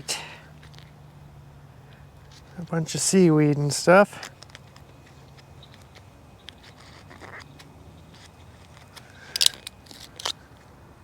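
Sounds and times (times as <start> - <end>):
handling clicks and scrapes: 4.1 - 10.7.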